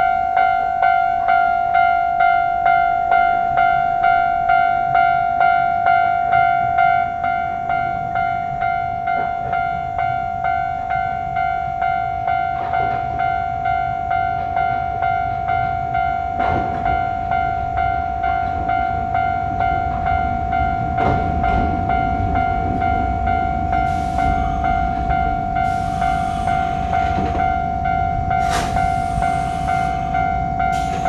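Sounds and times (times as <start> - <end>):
level crossing warning bell: 0.0 - 31.0
train rumble: 6.3 - 31.0
train wheel clacks: 23.8 - 27.7, 28.3 - 31.0.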